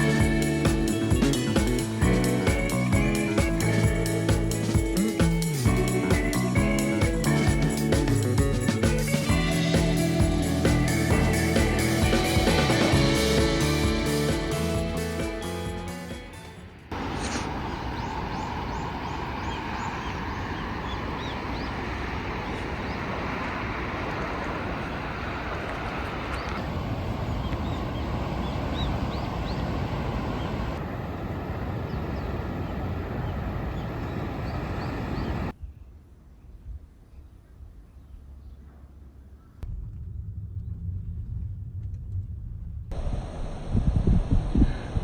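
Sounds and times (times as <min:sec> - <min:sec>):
birds chirping: 0:16.1 - 0:35.8.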